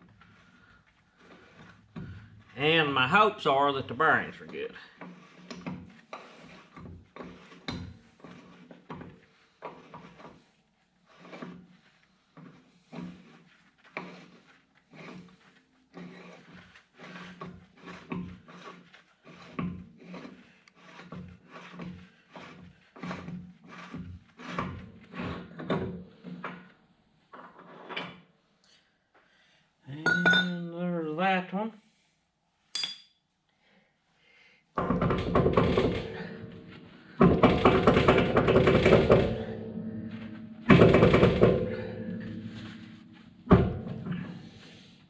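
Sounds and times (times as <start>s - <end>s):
rubbing and scraping on wheel hub: 0.0s - 28.3s, 34.8s - 45.0s
steady low hum: 36.0s - 45.0s.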